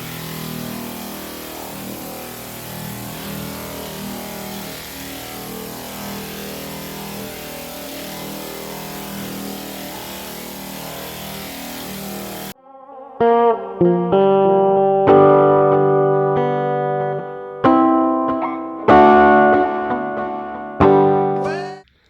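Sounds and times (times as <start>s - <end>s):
power sander running: 0.0s - 12.6s.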